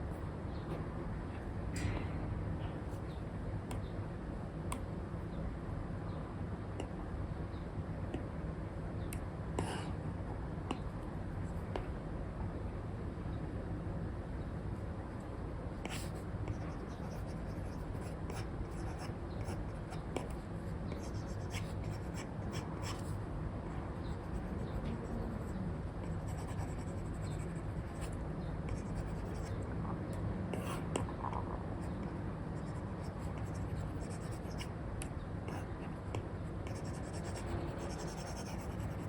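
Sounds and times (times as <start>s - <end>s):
stylus scratching and tapping on screen: 24.0s - 29.6s, 30.6s - 39.0s.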